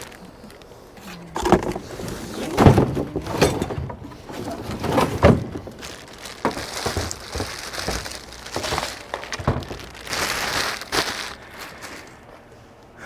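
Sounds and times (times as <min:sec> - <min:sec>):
packaging crinkling and rustling: 0:00.0 - 0:12.4
knocks and clunks: 0:01.0 - 0:10.9.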